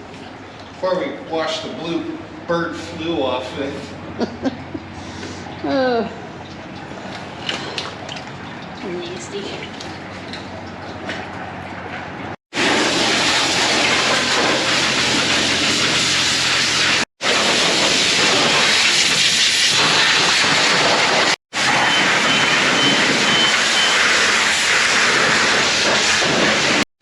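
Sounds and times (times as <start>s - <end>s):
pressure washer water jet hissing: 12.6s - 26.8s.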